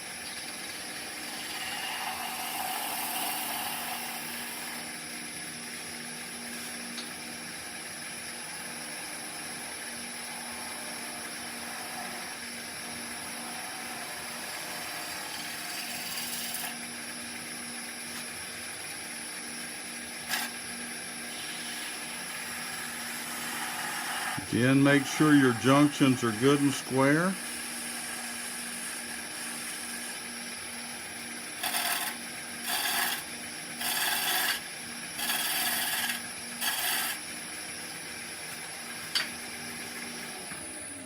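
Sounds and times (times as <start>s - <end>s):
wood lathe humming: 0.5s - 4.9s, 8.4s - 16.8s, 20.3s - 20.6s, 21.2s - 37.3s
gouge cutting wood hiss: 1.2s - 4.8s, 10.3s - 12.4s, 13.2s - 16.8s, 20.2s - 20.6s, 21.2s - 30.4s, 31.6s - 34.6s, 35.2s - 37.2s.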